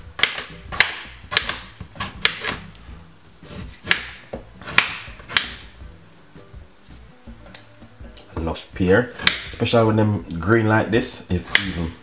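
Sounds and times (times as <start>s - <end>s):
knife chopping on board: 0.2s - 2.7s, 3.5s - 5.8s, 9.1s - 9.6s, 11.4s - 12.0s.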